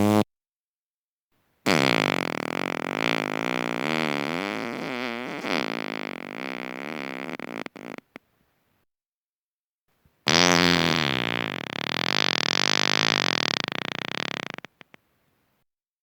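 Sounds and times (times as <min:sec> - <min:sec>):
long wavering fart: 0:00.0 - 0:00.3, 0:01.7 - 0:08.1, 0:10.3 - 0:14.9.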